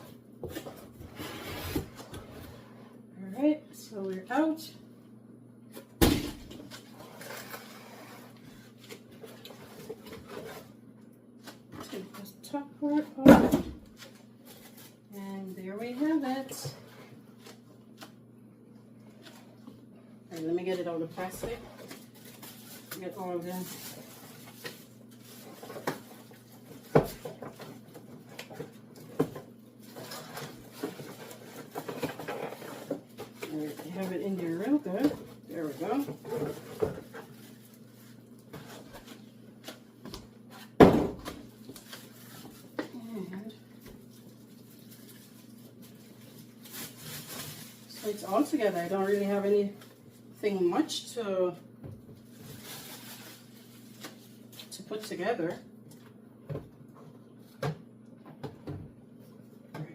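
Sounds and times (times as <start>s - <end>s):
plastic wrapper rustling: 13.9s - 15.1s, 21.7s - 29.2s, 29.8s - 39.2s, 41.6s - 43.1s, 43.8s - 50.3s, 52.2s - 54.7s
packaging rustling: 21.8s - 29.1s, 44.0s - 48.2s, 52.2s - 54.7s.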